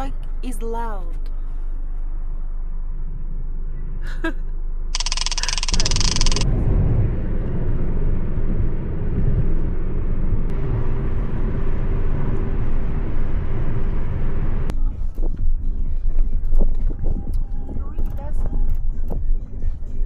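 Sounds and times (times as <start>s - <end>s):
harsh rattling noise: 5.0s - 6.5s
car driving rumble: 5.6s - 20.0s.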